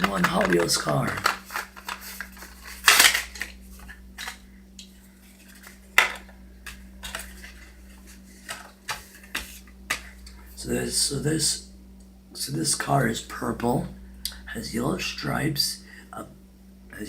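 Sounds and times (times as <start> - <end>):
packaging crackling and clicking: 0.0 - 7.7.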